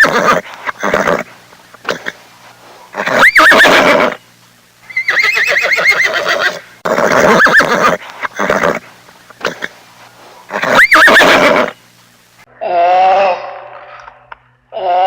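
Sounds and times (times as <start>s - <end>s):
horse whinnying: 0.0s - 1.3s, 3.0s - 4.2s, 4.9s - 8.8s, 10.5s - 11.8s.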